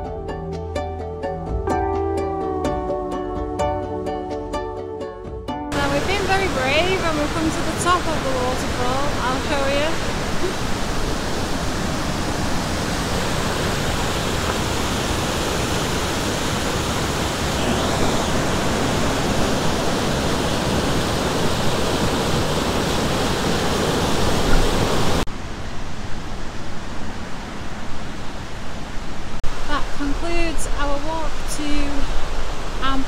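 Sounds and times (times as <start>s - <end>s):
running water: 5.7s - 25.3s
waterfall roaring: 5.7s - 33.0s.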